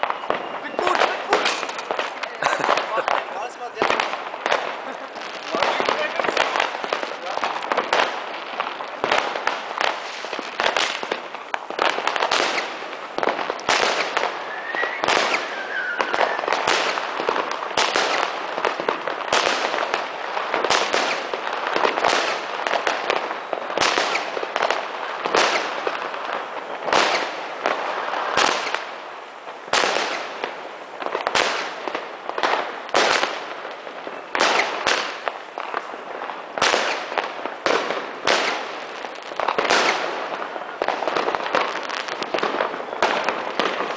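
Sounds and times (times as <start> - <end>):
firework crackling: 0.0 - 43.9.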